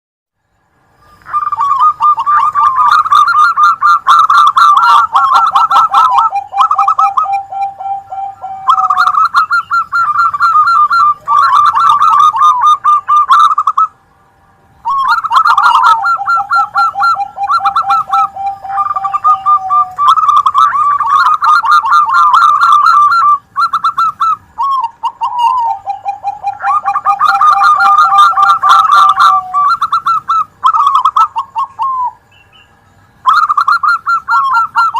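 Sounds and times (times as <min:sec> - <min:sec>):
doves cooing: 0:01.0 - 0:14.0, 0:14.8 - 0:34.9.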